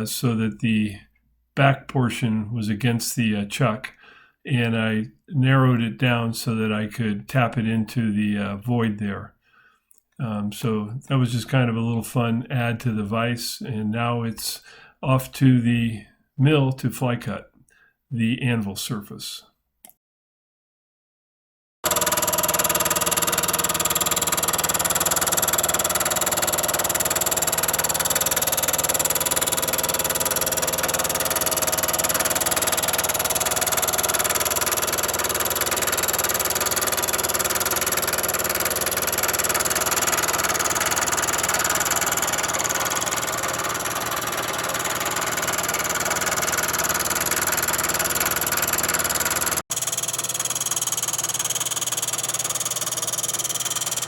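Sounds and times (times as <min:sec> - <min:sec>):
milling machine cutting metal: 0:21.9 - 0:54.0.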